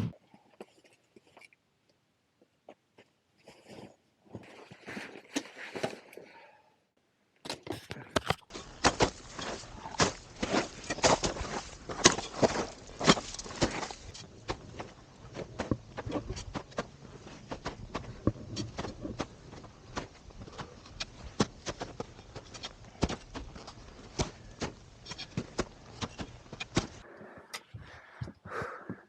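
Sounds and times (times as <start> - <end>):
footsteps: 8.4 - 29.0.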